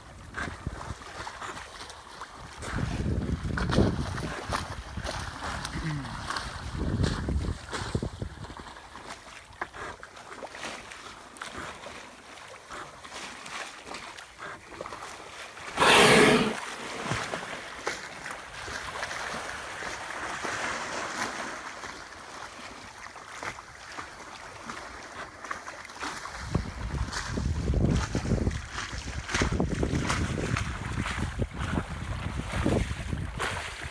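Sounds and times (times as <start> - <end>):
water and wind hiss: 0.0 - 33.9
whale blow whoosh: 15.8 - 16.6.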